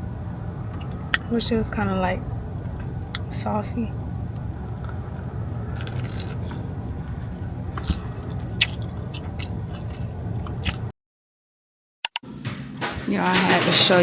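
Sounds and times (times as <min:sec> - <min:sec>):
steady low hum: 0:00.0 - 0:10.9
person chewing crunchy food: 0:05.6 - 0:10.9.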